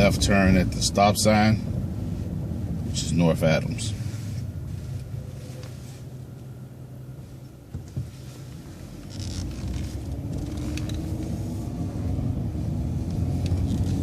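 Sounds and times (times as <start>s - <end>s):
bus engine idling and pulling away: 3.9s - 14.0s.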